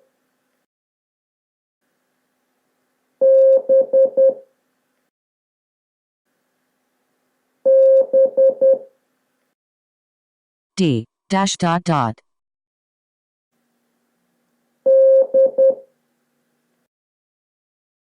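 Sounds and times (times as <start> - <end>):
morse code beeps: 3.2 - 4.4, 7.7 - 8.9, 14.9 - 15.8.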